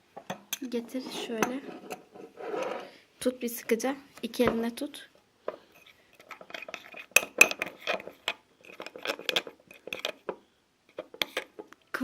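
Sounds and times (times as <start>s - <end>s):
spoon scraping a plate: 1.0s - 3.0s, 5.7s - 10.3s.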